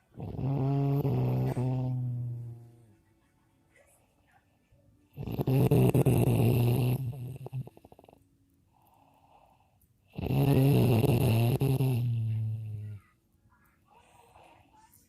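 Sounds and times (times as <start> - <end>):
man snoring: 0.2 - 2.7, 5.2 - 8.2, 10.2 - 12.8
soft breath: 8.7 - 10.1, 13.8 - 15.0.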